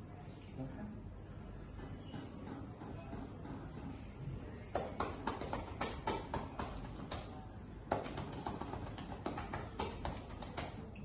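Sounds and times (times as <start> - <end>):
cupped hand slapping a back: 4.8 - 10.8.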